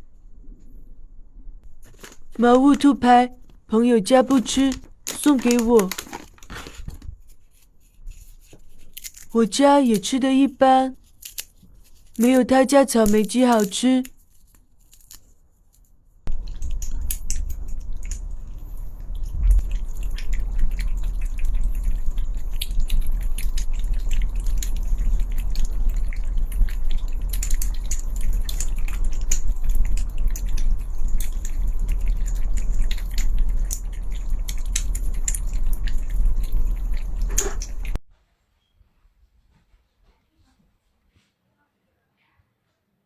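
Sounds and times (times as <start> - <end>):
cats lapping and chewing food: 1.7 - 9.4, 11.0 - 12.5, 16.3 - 38.0.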